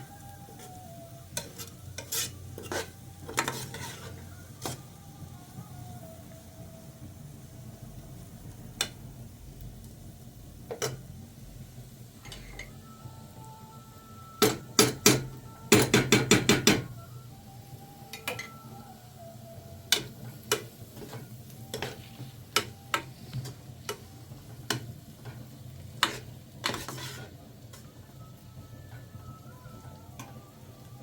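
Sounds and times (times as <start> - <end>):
metal utensils clattering on cookware: 1.4 - 4.8, 26.0 - 27.8.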